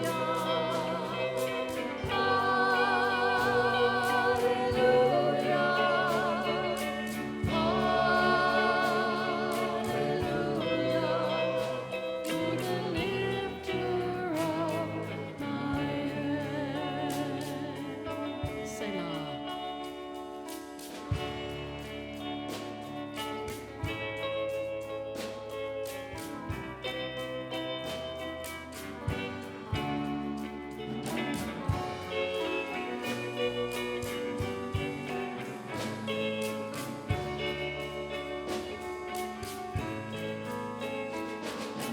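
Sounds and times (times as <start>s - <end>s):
voices singing with vibrato: 0.0s - 19.6s
band playing worship music: 0.0s - 41.9s.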